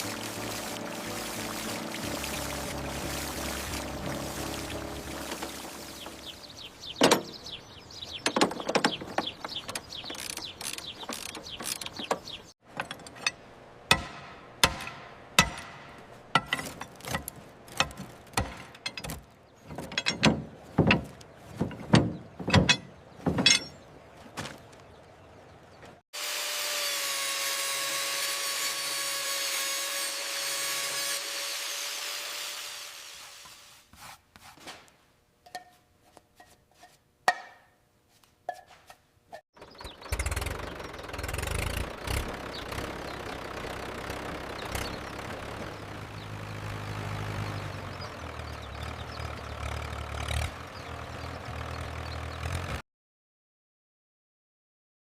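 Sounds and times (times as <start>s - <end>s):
metallic clicks and knocks: 8.2s - 23.8s
power tool running: 26.2s - 33.7s.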